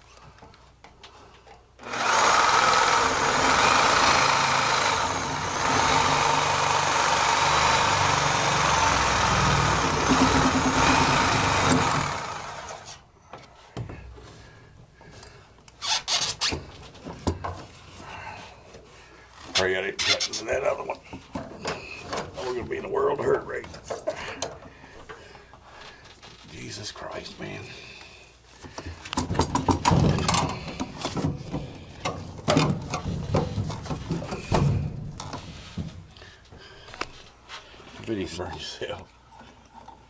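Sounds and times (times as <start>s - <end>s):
reciprocating saw cutting pipe: 1.8s - 13.0s
knocks and rattles: 2.2s - 12.8s, 28.7s - 36.2s.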